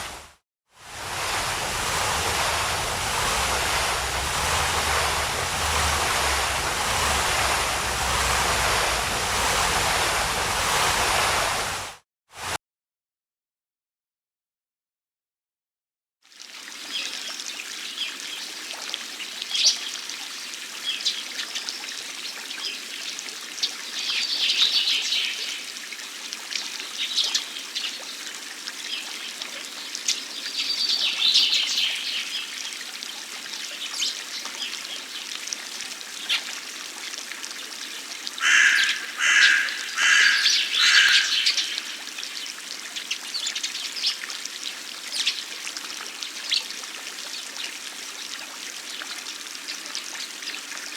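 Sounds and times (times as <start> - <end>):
fountain trickling and splashing: 0.0 - 12.6, 16.2 - 50.9
birds chirping: 38.4 - 42.0
loud calls: 38.4 - 42.0.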